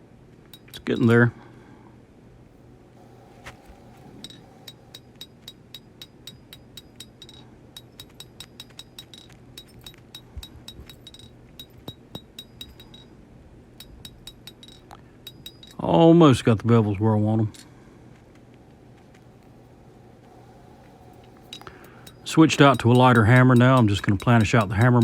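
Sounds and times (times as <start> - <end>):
hammer striking steel on anvil: 4.2 - 13.1, 21.5 - 25.0.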